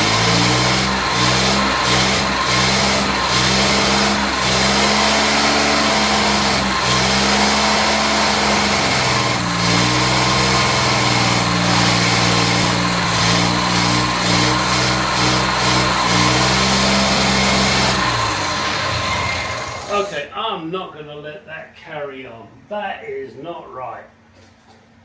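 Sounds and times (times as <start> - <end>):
car engine running unevenly: 0.0 - 20.2
man talking: 19.9 - 24.2.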